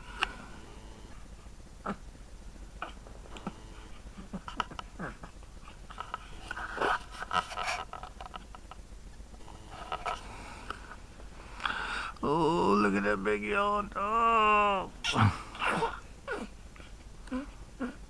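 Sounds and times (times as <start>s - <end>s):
baby grunts and snuffles: 2.8s - 3.6s, 4.2s - 5.4s, 15.0s - 16.5s.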